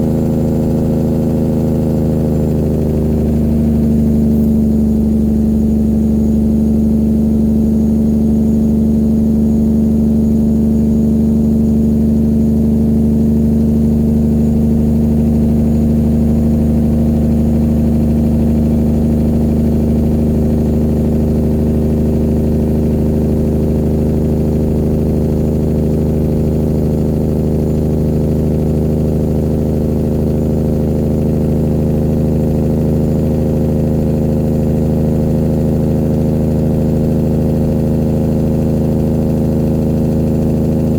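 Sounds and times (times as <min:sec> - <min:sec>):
diesel truck engine running: 0:00.0 - 0:40.9.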